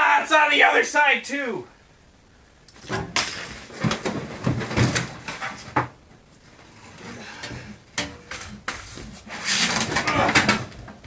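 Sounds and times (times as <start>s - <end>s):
knocks and rattles of sheet metal: 2.8s - 6.0s.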